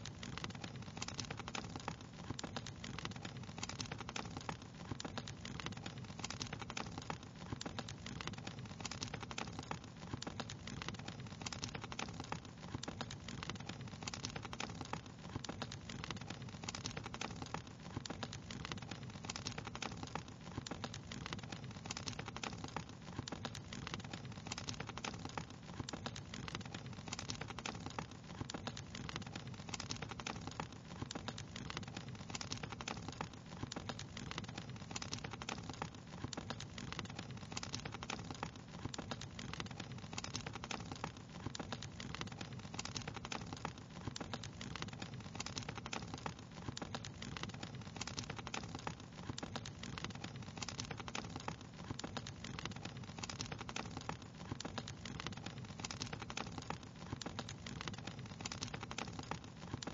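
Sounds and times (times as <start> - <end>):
wood fire crackling: 0.0 - 59.9.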